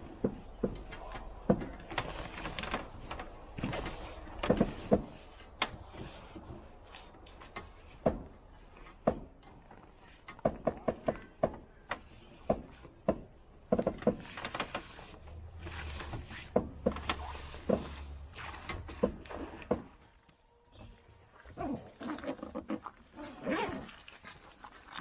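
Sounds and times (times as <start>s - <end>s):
irregular knocks and clicks: 0.0s - 20.0s.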